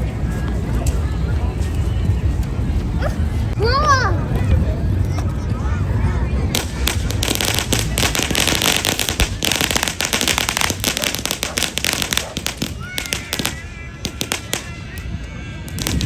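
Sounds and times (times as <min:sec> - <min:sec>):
fireworks crackling: 0:06.5 - 0:16.0.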